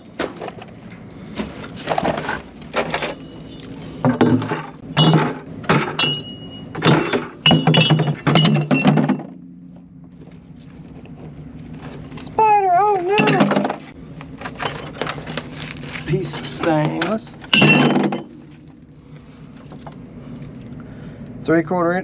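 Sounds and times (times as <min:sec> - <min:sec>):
steady low hum: 0:00.0 - 0:22.0
scrap metal clanking into bin: 0:01.3 - 0:09.4, 0:13.0 - 0:18.8.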